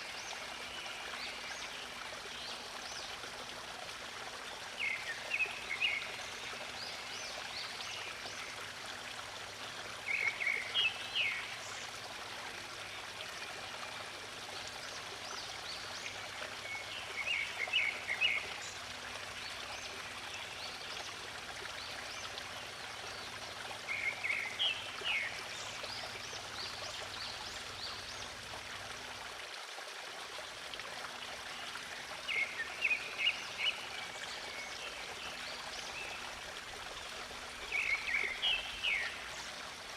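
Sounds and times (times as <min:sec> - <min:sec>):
stream water flowing: 0:00.0 - 0:39.9.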